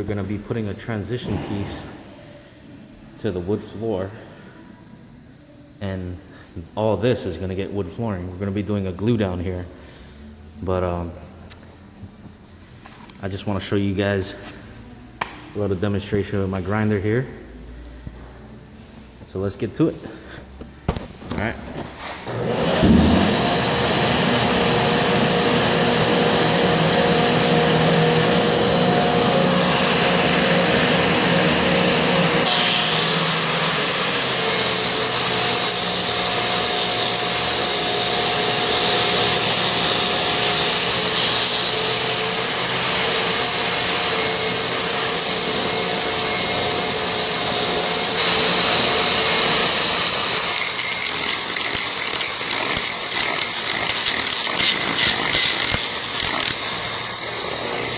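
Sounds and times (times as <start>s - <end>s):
shop vac running: 21.8s - 57.9s
angle grinder grinding concrete: 22.3s - 57.9s.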